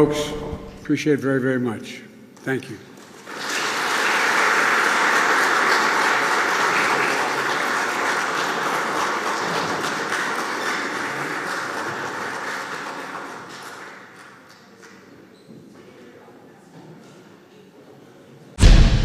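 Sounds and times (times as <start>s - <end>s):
audience applauding: 3.0s - 14.4s.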